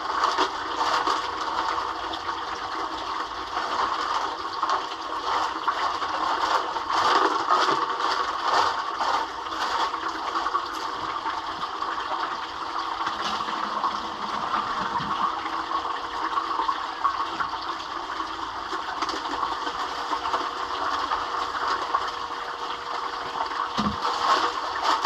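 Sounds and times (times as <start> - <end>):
running water rushing: 9.6 - 25.0.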